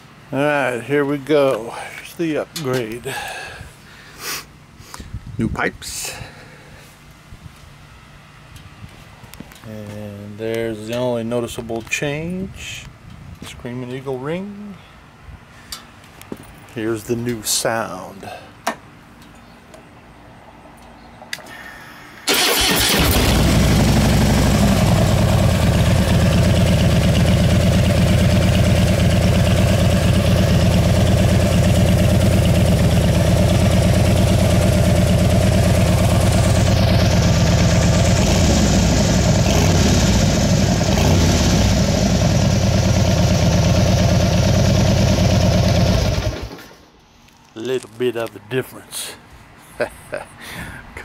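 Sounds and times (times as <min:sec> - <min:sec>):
motorcycle engine idling loudly: 0:22.6 - 0:46.5.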